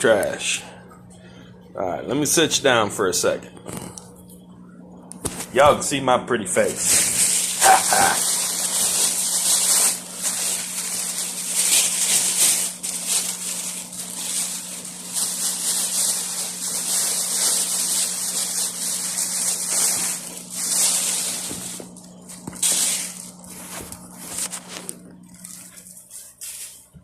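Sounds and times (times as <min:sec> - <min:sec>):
steady low hum: 0:00.0 - 0:27.0
packaging rustling and crackling: 0:06.7 - 0:26.8.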